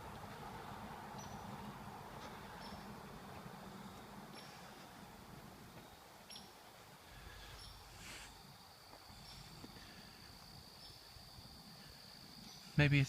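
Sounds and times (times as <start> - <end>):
high insect drone: 0.5 - 13.0
bird chirping: 1.1 - 3.0, 3.6 - 5.1, 5.8 - 8.4, 10.7 - 11.2, 12.3 - 13.0.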